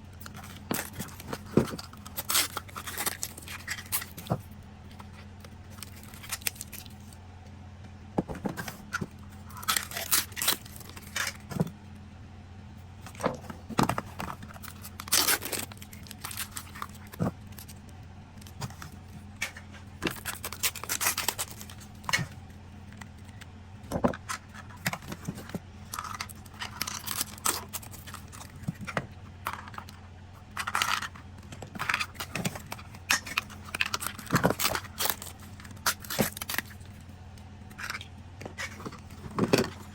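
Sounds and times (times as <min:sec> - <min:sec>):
low steady hum: 0:00.0 - 0:39.9
plastic crinkling and tearing: 0:00.2 - 0:04.4, 0:05.7 - 0:07.1, 0:09.4 - 0:11.5, 0:13.9 - 0:17.8, 0:18.4 - 0:22.3, 0:24.3 - 0:37.0.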